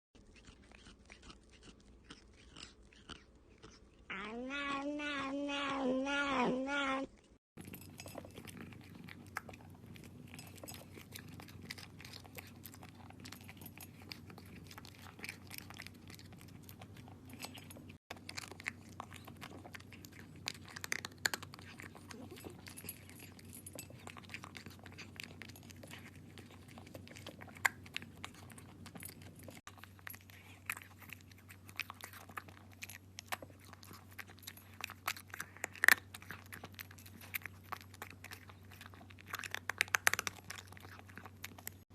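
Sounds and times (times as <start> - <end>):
cat chewing and crunching food: 0.2 - 5.7, 6.6 - 41.9.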